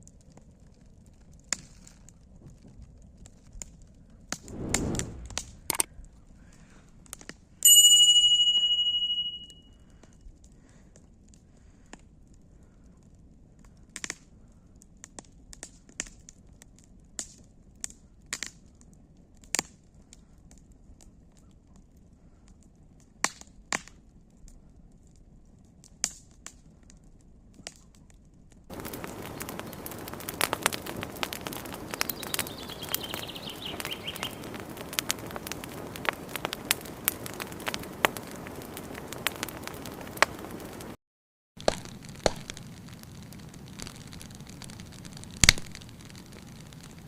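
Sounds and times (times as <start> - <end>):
wood fire crackling: 0.0 - 41.0, 41.6 - 47.0
loud dense crackling: 4.3 - 5.9, 28.7 - 41.0, 41.6 - 47.0
rush of noise: 4.4 - 5.8
metallic ring: 7.7 - 9.7.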